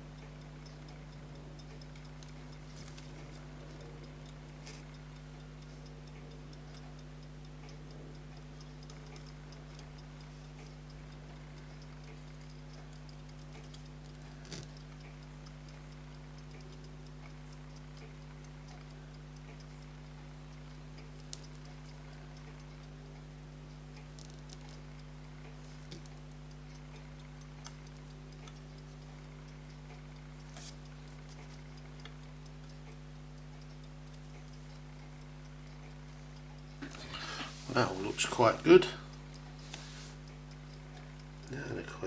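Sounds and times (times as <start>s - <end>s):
pocket watch ticking: 0.1s - 36.9s, 37.7s - 42.0s
small sharp clicks of tools: 13.6s - 15.1s.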